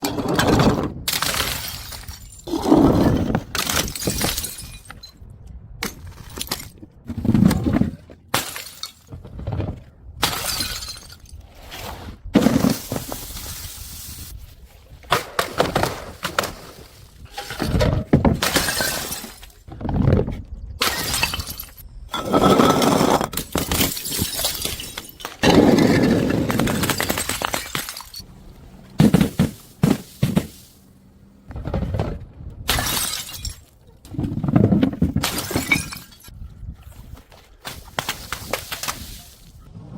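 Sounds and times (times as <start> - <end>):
glass bottles shattering: 0.1 - 5.2, 8.4 - 9.1, 10.2 - 11.4, 17.3 - 19.6, 20.8 - 28.3, 32.7 - 33.8, 35.0 - 36.3.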